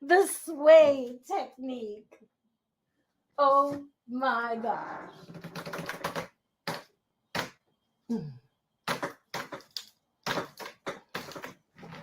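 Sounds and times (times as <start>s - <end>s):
wooden closet creaking and cracking: 4.8s - 7.6s, 8.8s - 12.0s.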